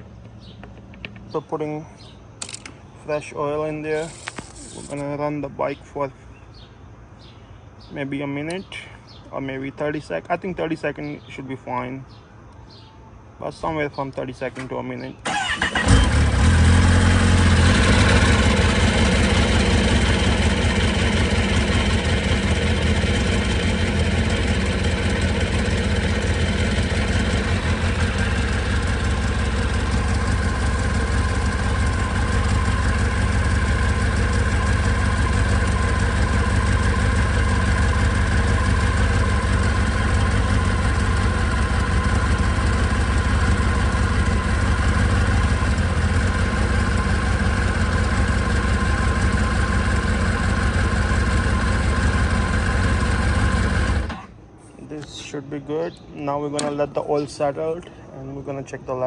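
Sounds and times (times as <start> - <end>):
motorcycle engine idling: 15.3 - 54.2.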